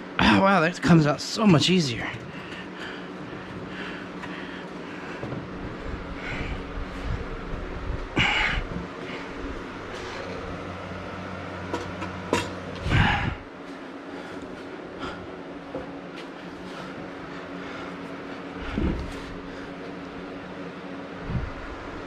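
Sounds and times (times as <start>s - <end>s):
steady low hum: 0.0s - 22.0s
knocks and clanks of parts: 11.7s - 12.9s.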